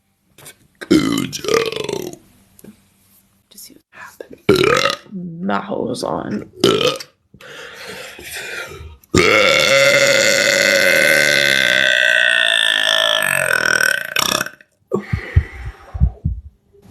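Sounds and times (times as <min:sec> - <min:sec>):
woman belching: 0:00.9 - 0:02.2, 0:04.5 - 0:05.2, 0:06.6 - 0:07.2, 0:09.2 - 0:14.6.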